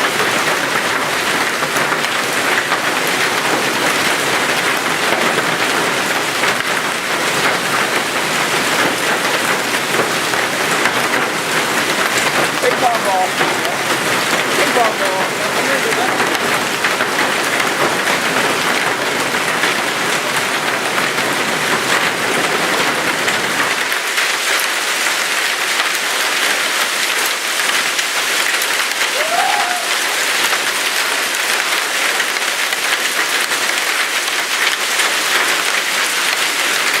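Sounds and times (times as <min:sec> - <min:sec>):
hail and heavy rain pelting: 0:00.0 - 0:37.0.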